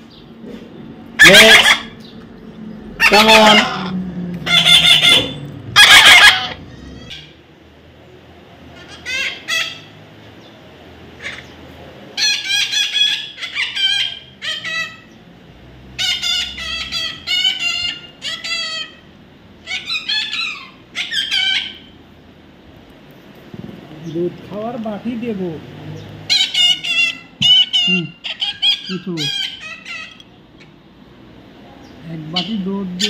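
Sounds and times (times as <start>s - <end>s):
baby parrot calling: 1.2s - 2.1s, 3.0s - 7.4s, 8.7s - 10.0s, 11.2s - 11.6s, 12.2s - 15.2s, 16.0s - 22.0s, 26.0s - 30.8s, 32.2s - 33.0s.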